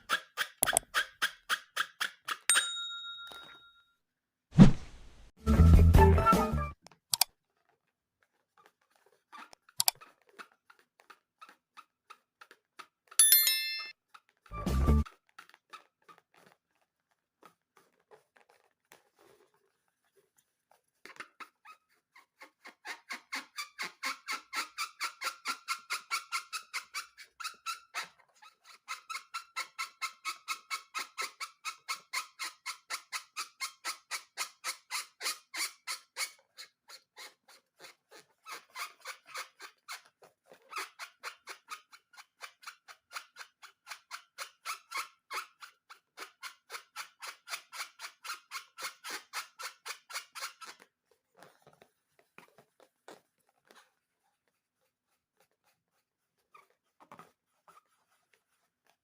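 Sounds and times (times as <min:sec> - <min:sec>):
squeaky rubbing strokes: 0:21.4 - 0:59.0.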